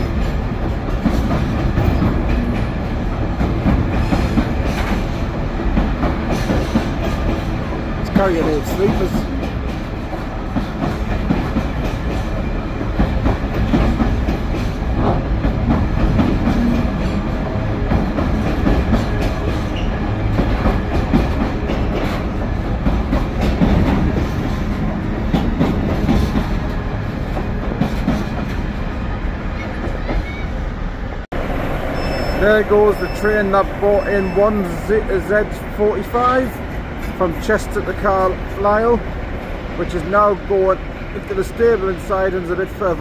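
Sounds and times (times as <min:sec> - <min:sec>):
wheels clicking over rail joints: 0:00.0 - 0:28.7
train wagons rumbling past: 0:00.0 - 0:43.0.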